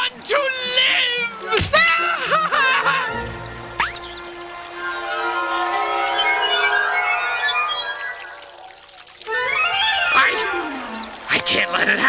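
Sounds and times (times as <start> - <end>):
orchestral strings sustained notes: 2.5 - 12.0.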